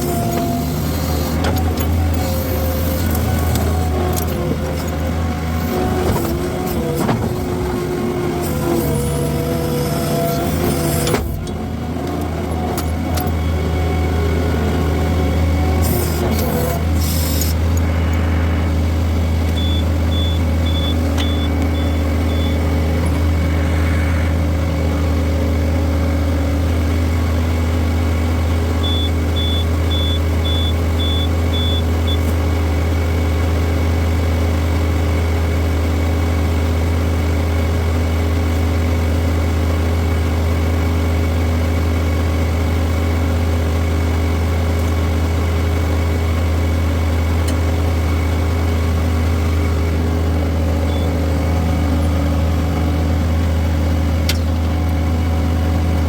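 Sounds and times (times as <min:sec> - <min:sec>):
skid steer engine running: 0:00.0 - 0:56.0
high beeps: 0:19.6 - 0:22.6, 0:28.8 - 0:32.2.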